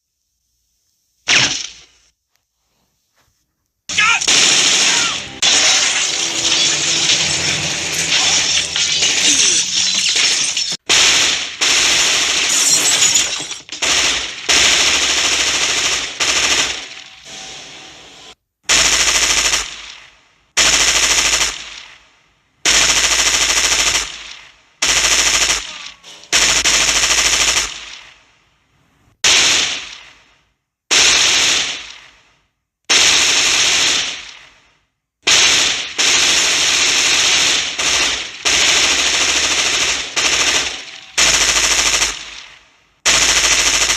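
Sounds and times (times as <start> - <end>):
automatic gunfire bursts: 13.8 - 17.1, 18.7 - 20.0, 20.6 - 21.9, 22.6 - 28.2, 35.3 - 43.9.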